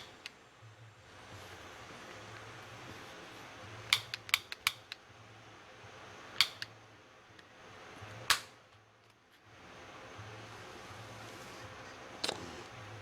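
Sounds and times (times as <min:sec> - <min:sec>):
soldering iron igniter clicks: 0:03.9 - 0:05.0, 0:06.4 - 0:06.8, 0:08.3 - 0:08.6.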